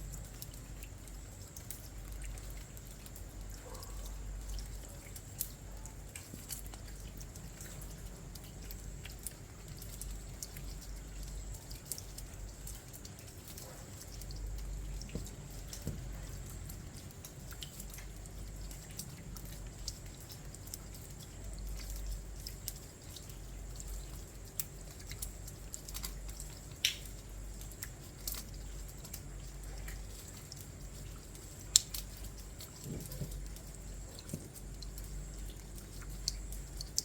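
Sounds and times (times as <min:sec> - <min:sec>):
faint hiss and low rumble: 0:00.0 - 0:37.0
raindrops pattering: 0:00.0 - 0:37.0.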